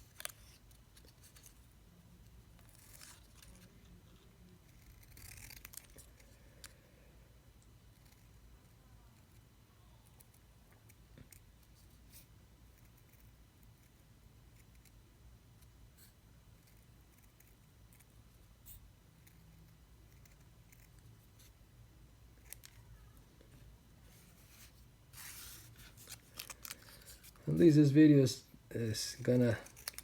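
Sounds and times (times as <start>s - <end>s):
craft knife cutting paper: 2.6s - 6.3s, 24.2s - 27.4s, 29.4s - 30.0s.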